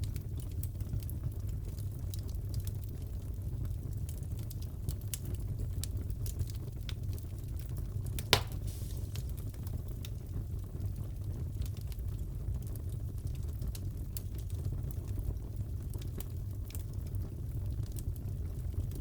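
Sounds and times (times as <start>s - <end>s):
fireplace crackling: 0.0s - 11.9s
sharp pop of burning wood: 8.2s - 9.6s.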